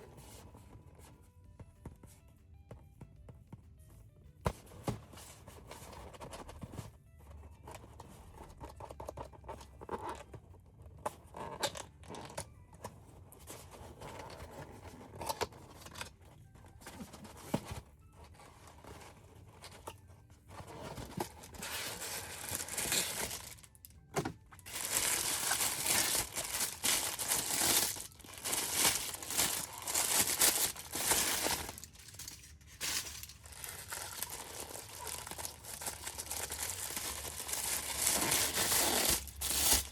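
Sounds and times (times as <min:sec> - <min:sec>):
plastic wrapper crinkling: 0:21.2 - 0:23.9, 0:24.6 - 0:39.9.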